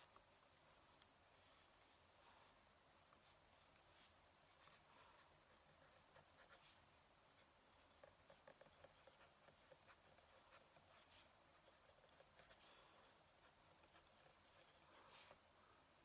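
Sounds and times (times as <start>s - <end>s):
pen nib scratching on paper: 4.6s - 15.4s.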